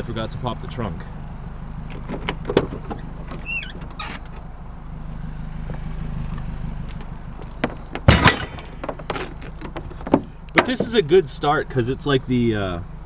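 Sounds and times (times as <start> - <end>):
car engine idling: 0.0 - 13.0
short wavering squeak: 2.9 - 4.5
clicks and knocks: 7.5 - 11.0.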